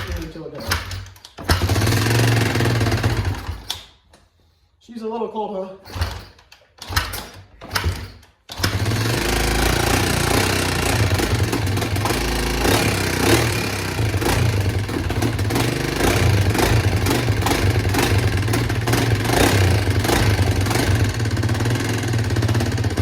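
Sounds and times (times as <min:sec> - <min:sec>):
motorcycle engine kick-start attempts: 0:00.0 - 0:04.2, 0:05.8 - 0:23.0
motorcycle engine running: 0:01.5 - 0:03.6, 0:07.8 - 0:23.0.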